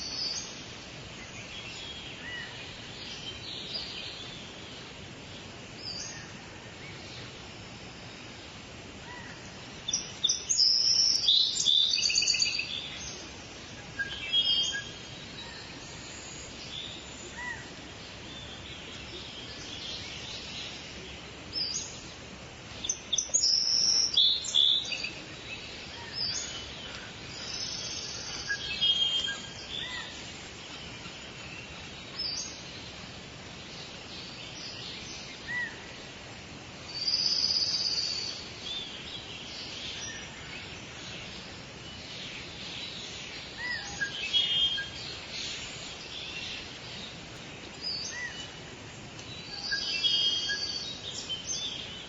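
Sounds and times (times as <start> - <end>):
songbirds chirping and trilling: 0.0 - 52.0
steady background hiss: 0.0 - 52.0.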